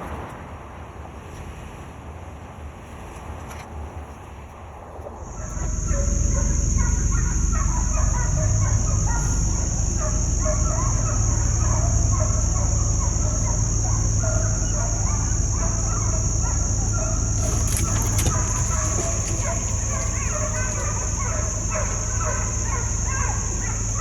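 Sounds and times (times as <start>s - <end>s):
low engine rumble: 4.0s - 24.0s
high-pitched whine: 5.1s - 24.0s
hounds baying: 5.3s - 24.0s.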